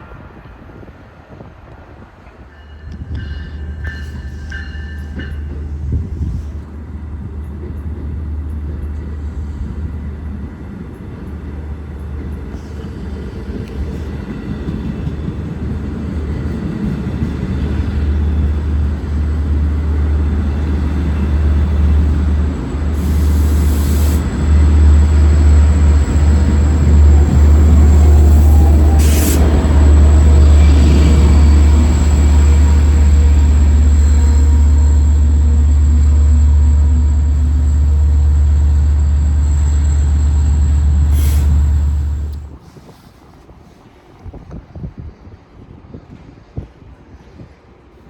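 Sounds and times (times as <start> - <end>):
train rumbling: 0.0 - 47.9
brief hisses: 23.0 - 24.3, 28.1 - 29.6, 40.9 - 43.8.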